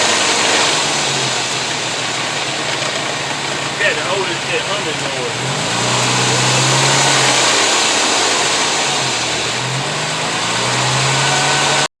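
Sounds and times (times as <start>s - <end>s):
vehicle driveline humming: 0.0s - 11.9s.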